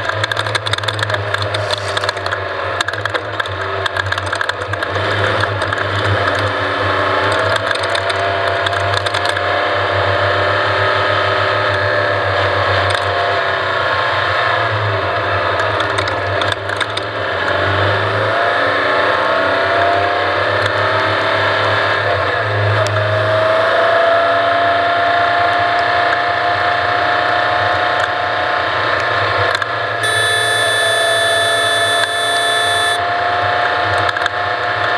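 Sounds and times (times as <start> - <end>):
off-road vehicle engine: 29.5 - 33.0.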